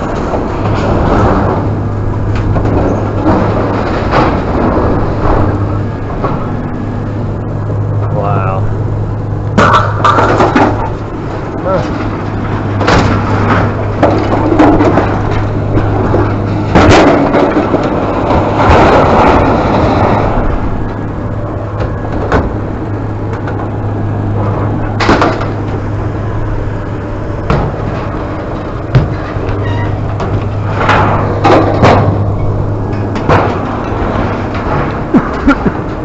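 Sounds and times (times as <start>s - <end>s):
steady low drone: 0.0s - 36.0s
knocks and clunks: 9.5s - 23.8s, 24.4s - 25.8s, 27.4s - 36.0s.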